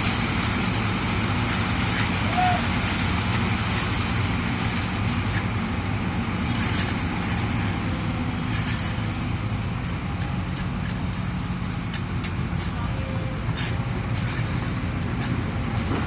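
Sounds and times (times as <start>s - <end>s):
diesel engine running: 0.0s - 16.0s.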